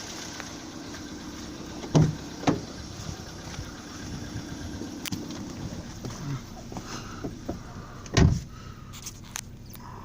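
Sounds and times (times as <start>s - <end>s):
car engine idling: 0.0s - 10.0s
heavy thumps: 1.8s - 2.7s.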